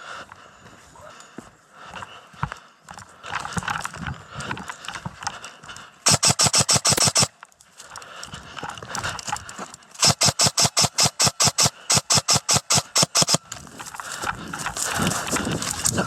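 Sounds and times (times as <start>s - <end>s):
airsoft gun rapid shots: 6.0s - 7.4s, 10.0s - 13.6s
rustling noise: 13.2s - 16.0s.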